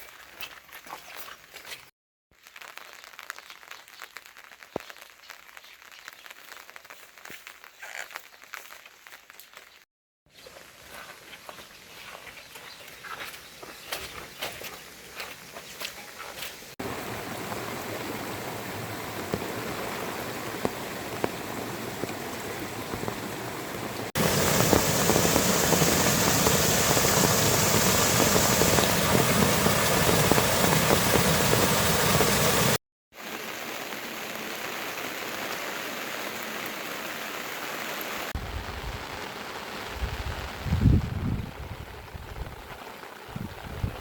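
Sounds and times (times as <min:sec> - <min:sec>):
steady rain falling: 0:02.4 - 0:07.7, 0:16.4 - 0:44.0.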